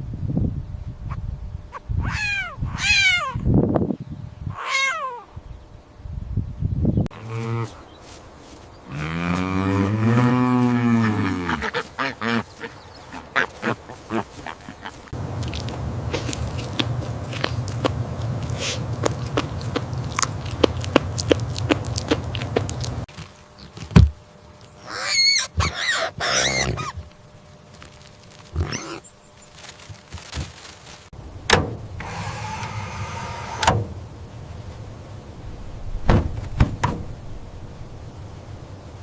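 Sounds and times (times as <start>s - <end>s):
short wavering animal calls: 1.7s - 3.4s, 4.5s - 5.3s, 24.8s - 27.1s
low hum: 15.1s - 30.0s, 31.2s - 39.0s
knocks: 36.1s - 37.1s.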